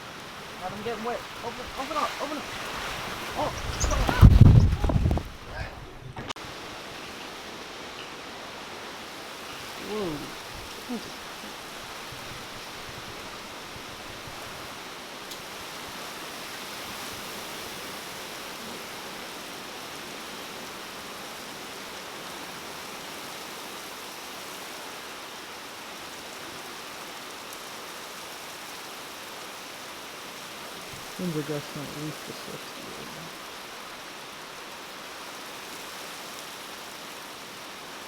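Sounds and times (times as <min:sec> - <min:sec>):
heavy rain: 0:00.0 - 0:38.0
strong wind gusts: 0:00.2 - 0:07.0.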